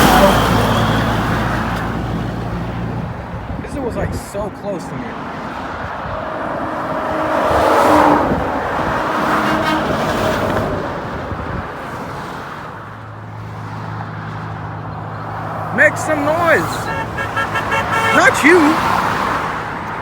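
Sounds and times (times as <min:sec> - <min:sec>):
vehicle passing close by: 0:04.8 - 0:20.0
low steady engine drone: 0:05.8 - 0:11.9.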